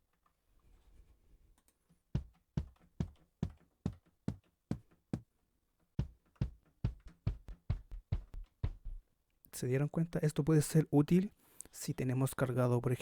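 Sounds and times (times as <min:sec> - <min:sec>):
pitched drum sample hits: 0:06.0 - 0:09.0.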